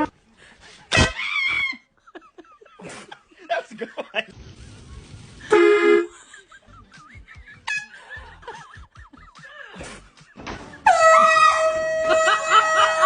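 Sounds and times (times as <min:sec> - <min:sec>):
people laughing: 0:01.8 - 0:05.1, 0:06.1 - 0:13.0
air horn blast: 0:05.4 - 0:06.1, 0:10.8 - 0:13.0.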